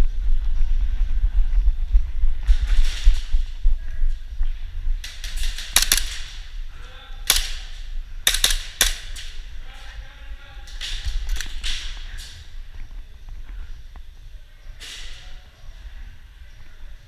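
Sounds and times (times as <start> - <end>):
low rumble on microphone: 0.0 - 17.0
airsoft guns firing: 5.0 - 9.6, 10.6 - 12.5.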